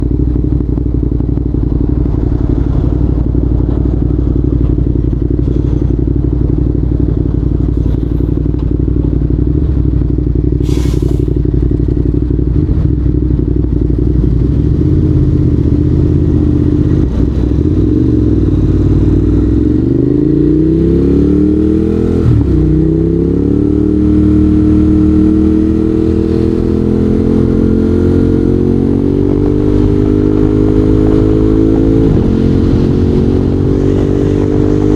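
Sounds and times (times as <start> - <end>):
motorcycle engine revving: 0.0 - 34.9
brief rush of noise: 10.6 - 11.4.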